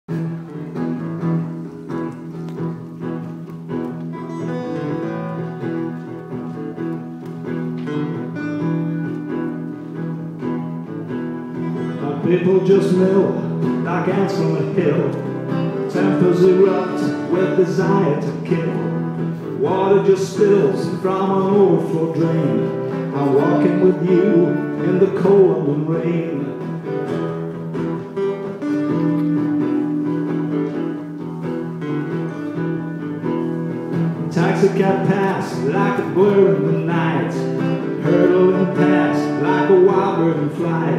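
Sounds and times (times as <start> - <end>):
acoustic guitar strumming: 0.1 - 40.9.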